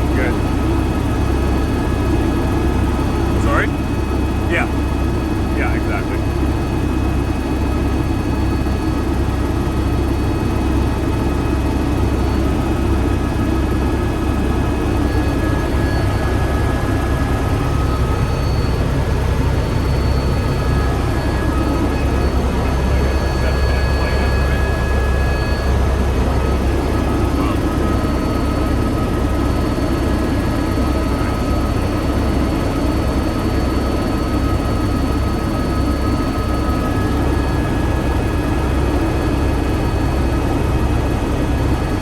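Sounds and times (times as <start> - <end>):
helicopter rotor rumble: 0.0 - 42.0
high-pitched turbine whine: 0.0 - 42.0.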